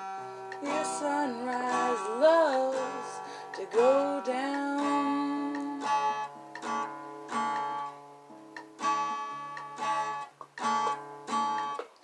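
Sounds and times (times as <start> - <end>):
acoustic guitar strumming chords: 0.0 - 12.0
person singing: 0.6 - 6.0.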